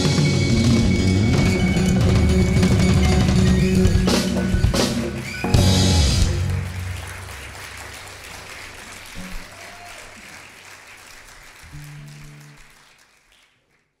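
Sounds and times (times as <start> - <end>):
held low instrument notes: 0.0 - 7.2
congregation applauding: 1.8 - 14.0.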